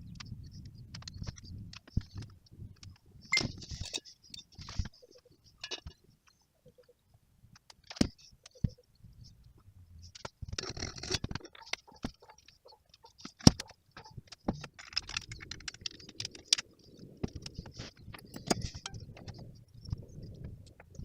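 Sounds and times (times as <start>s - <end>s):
clicks taps and rustles: 0.1s - 8.9s, 9.5s - 21.0s.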